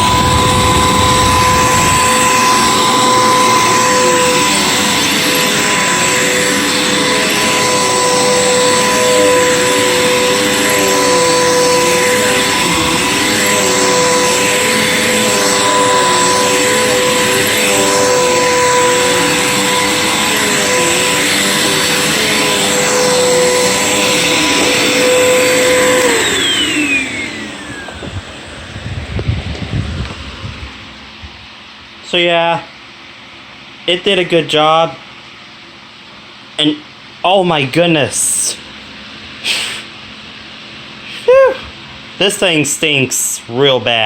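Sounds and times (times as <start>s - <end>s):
vacuum cleaner motor whining: 0.0s - 31.8s.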